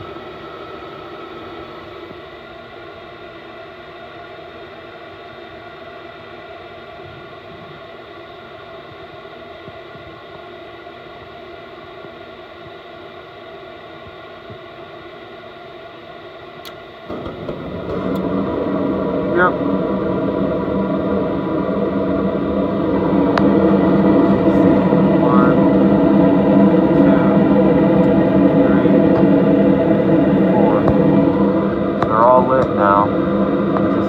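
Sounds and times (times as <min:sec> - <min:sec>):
furnace motor hum: 0:16.7 - 0:34.0
low burner rush: 0:16.7 - 0:34.0.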